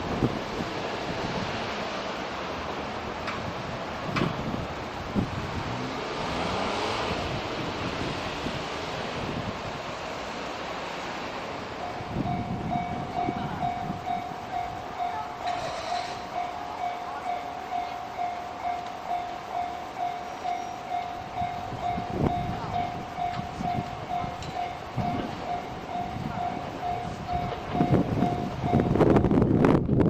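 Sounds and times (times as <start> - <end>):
steady rushing noise: 0.0 - 15.0, 21.0 - 30.0
level-crossing warning bell: 9.3 - 29.4.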